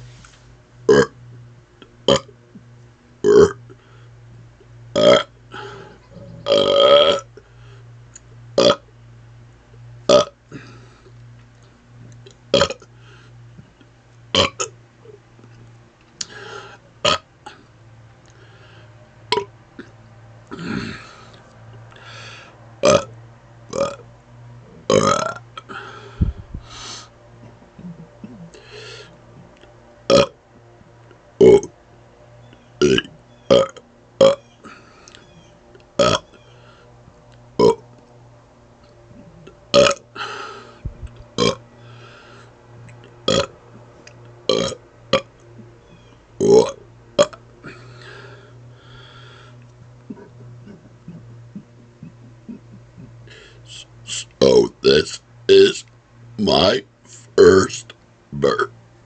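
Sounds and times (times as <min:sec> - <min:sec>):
man burping: 0:00.9 - 0:01.2, 0:02.1 - 0:02.3, 0:03.2 - 0:03.7, 0:05.0 - 0:07.3, 0:08.6 - 0:08.8, 0:10.1 - 0:10.8, 0:12.5 - 0:12.9, 0:14.4 - 0:14.7, 0:16.2 - 0:17.7, 0:19.3 - 0:21.2, 0:22.8 - 0:23.1, 0:23.7 - 0:24.0, 0:24.9 - 0:26.4, 0:30.1 - 0:30.4, 0:31.4 - 0:31.7, 0:32.8 - 0:34.8, 0:36.0 - 0:36.2, 0:37.6 - 0:37.8, 0:39.7 - 0:40.4, 0:41.4 - 0:41.6, 0:43.3 - 0:43.5, 0:44.5 - 0:45.3, 0:46.4 - 0:48.3, 0:50.1 - 0:58.7.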